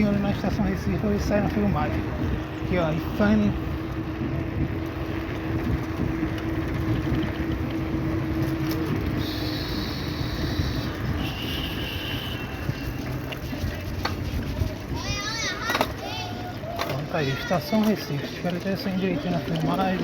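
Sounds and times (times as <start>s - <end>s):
city street traffic: 0.0s - 20.0s.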